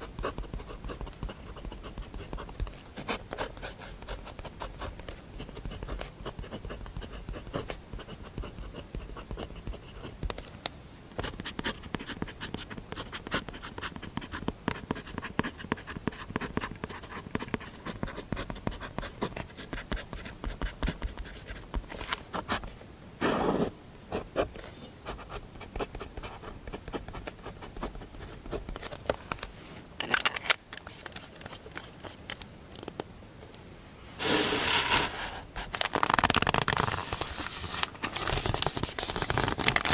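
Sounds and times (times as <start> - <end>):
pen nib scratching paper: 0.0 - 10.4, 11.2 - 21.6
paper rustle: 34.2 - 39.9.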